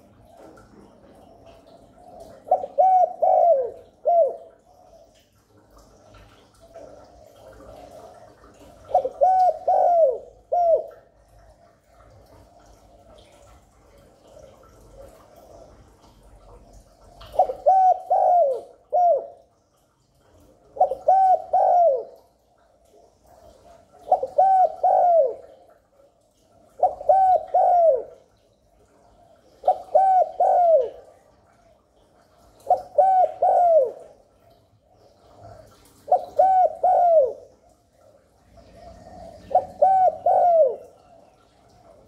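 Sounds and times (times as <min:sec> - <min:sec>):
dove cooing: 0:00.0 - 0:05.2, 0:06.2 - 0:13.2, 0:17.2 - 0:19.5, 0:20.7 - 0:25.8, 0:26.7 - 0:28.3, 0:29.4 - 0:31.3, 0:32.6 - 0:34.4, 0:35.2 - 0:42.0.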